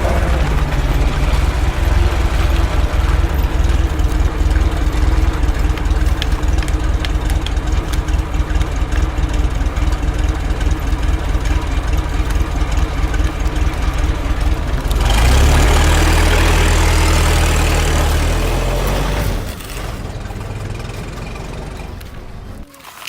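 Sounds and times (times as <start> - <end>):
heavy diesel engine revving: 0.0 - 22.6.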